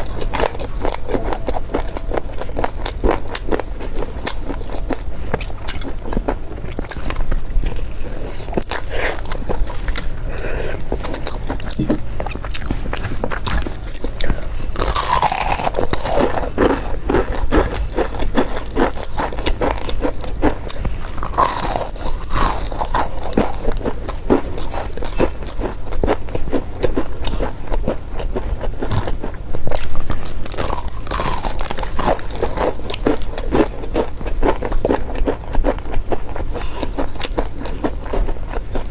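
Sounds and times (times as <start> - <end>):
chewing crispy fried chicken: 0.0 - 38.9.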